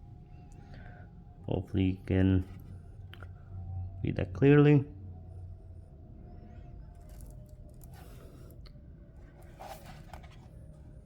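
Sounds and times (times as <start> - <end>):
low steady hum: 0.0 - 11.0
box handling clicks and scrapes: 9.4 - 10.6.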